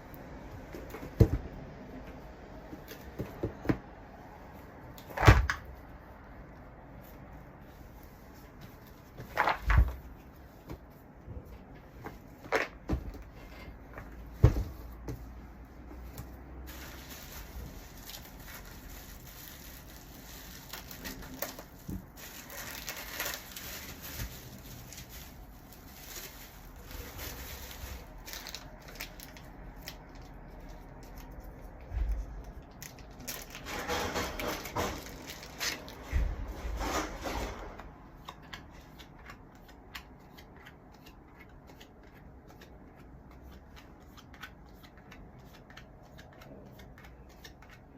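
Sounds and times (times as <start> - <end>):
packaging rustling: 16.6 - 37.3.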